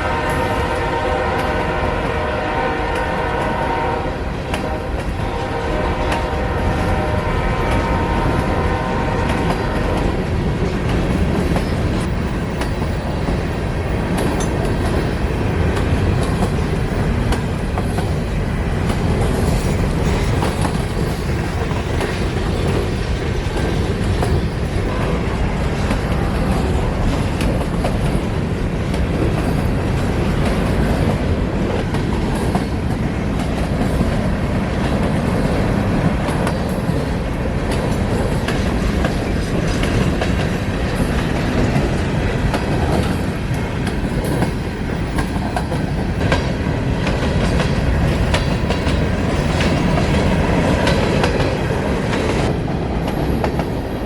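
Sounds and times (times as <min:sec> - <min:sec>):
locomotive air horn chord: 0:00.0 - 0:10.1
train rumbling past: 0:00.0 - 0:54.0
wheels clicking over rail joints: 0:09.3 - 0:24.9, 0:25.9 - 0:53.8.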